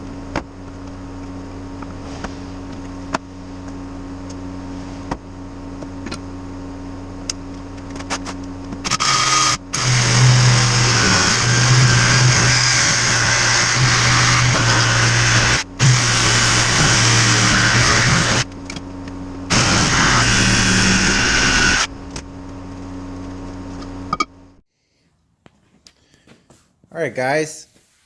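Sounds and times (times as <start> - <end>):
steady low hum: 0.0 - 26.6
loud power tool running: 8.1 - 23.8.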